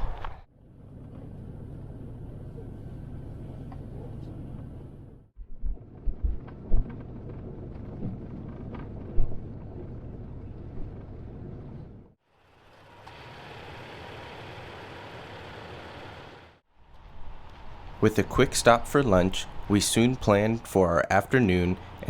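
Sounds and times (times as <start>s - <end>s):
truck engine low rumble: 0.0s - 22.0s
heavy low thumps: 5.4s - 7.1s.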